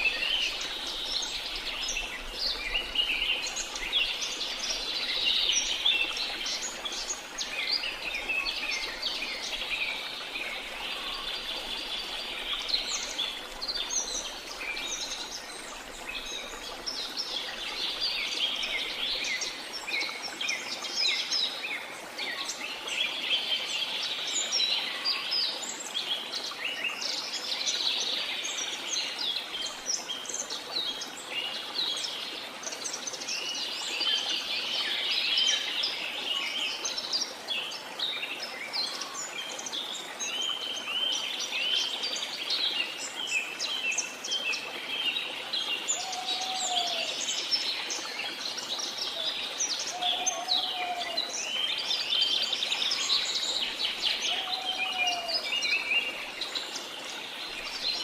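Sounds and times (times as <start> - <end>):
low arching bird call: 49.9 - 51.3, 54.2 - 55.6.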